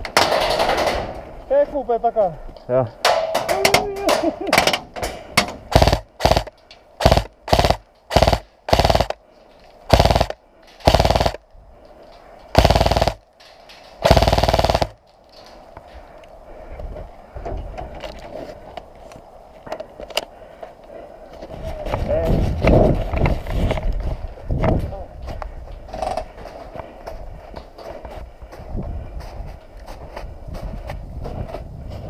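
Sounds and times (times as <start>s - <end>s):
airsoft rifles firing bursts: 5.7s - 9.2s, 9.9s - 11.4s, 12.6s - 13.3s, 14.0s - 15.0s
faint distant shots: 5.7s - 9.2s, 9.9s - 11.4s, 12.6s - 13.3s, 14.0s - 15.0s.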